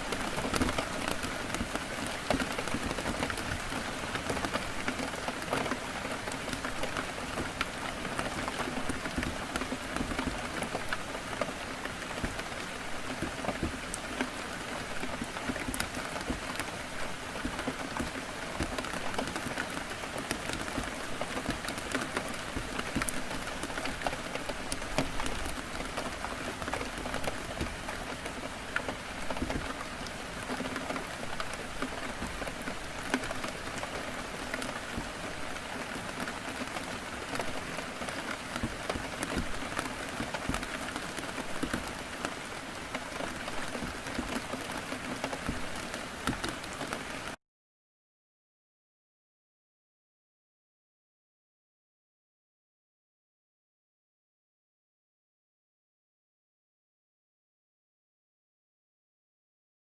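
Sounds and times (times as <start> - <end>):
heavy rain falling: 0.0 - 47.4
raindrops ticking on a window: 0.0 - 47.4.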